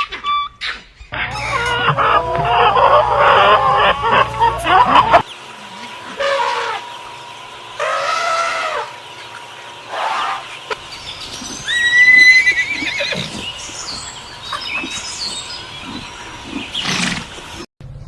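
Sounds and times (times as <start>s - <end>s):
animal calls: 0.0s - 7.2s, 7.8s - 17.5s
horse whinnying: 11.7s - 13.4s.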